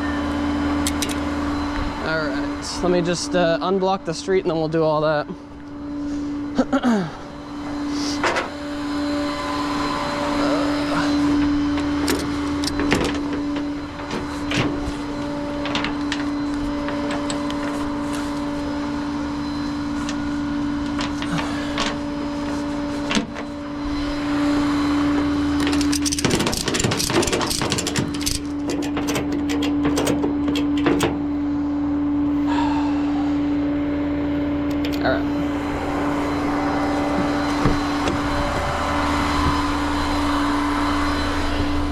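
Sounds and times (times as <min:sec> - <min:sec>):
tow truck engine humming: 0:00.0 - 0:41.9
clicks and rattles: 0:25.6 - 0:31.2.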